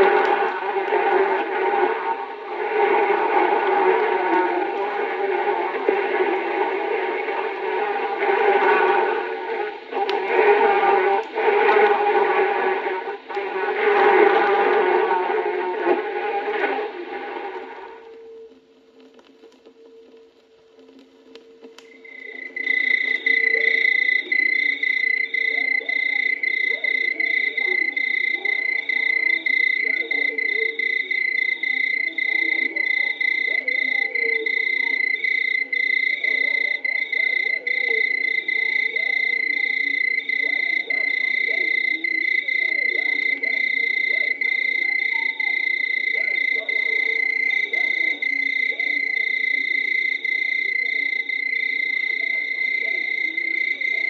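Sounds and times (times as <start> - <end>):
frogs croaking: 21.4 - 54.0
high insect trill: 21.4 - 54.0.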